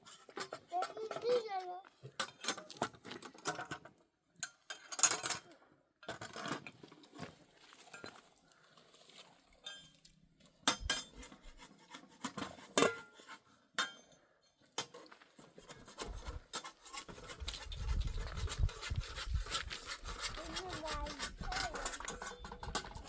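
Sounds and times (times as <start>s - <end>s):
low rumbling rub: 17.1s - 22.2s.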